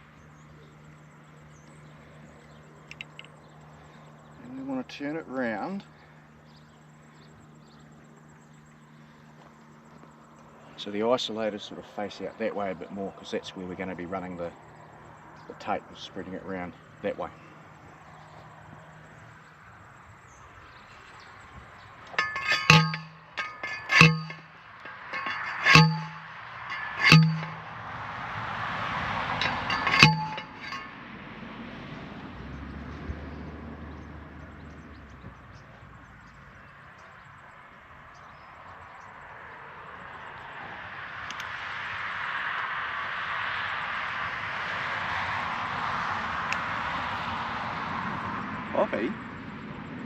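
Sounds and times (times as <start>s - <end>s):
light metallic clinks: 1.8s - 3.8s, 22.0s - 27.7s, 29.3s - 31.0s
metal post being rammed: 22.1s - 27.7s, 29.4s - 31.0s.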